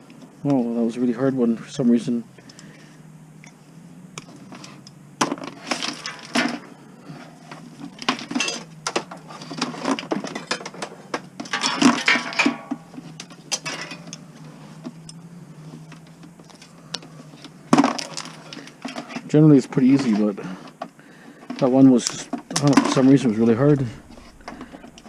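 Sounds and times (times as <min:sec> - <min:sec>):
plastic cracking and crunching: 0:17.7 - 0:19.3.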